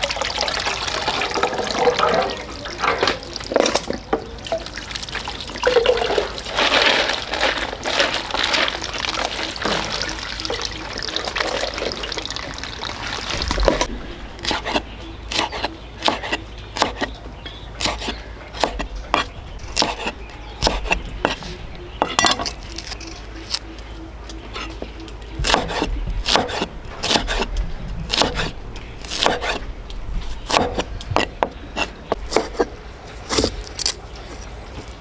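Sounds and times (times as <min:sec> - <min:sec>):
low rumble: 0:12.1 - 0:15.3.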